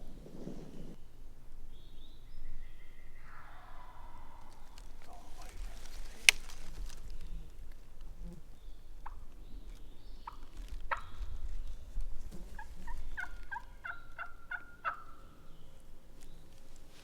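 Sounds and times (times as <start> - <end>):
turkey calls: 2.7 - 7.5, 9.0 - 9.4, 12.5 - 15.6
sharp snap: 5.0 - 7.0.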